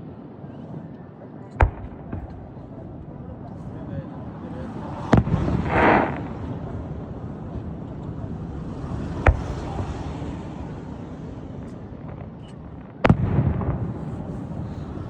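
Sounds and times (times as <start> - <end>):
steady background noise: 0.0 - 15.0
firework bangs: 1.6 - 15.0
firework hissing burst: 5.1 - 6.7.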